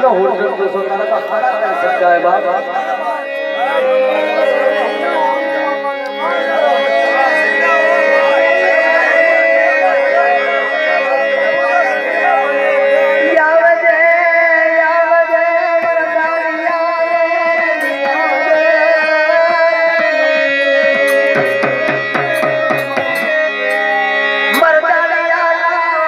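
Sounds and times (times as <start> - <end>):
person singing over held chords: 0.0 - 26.0
hand-drum strokes: 21.0 - 24.0.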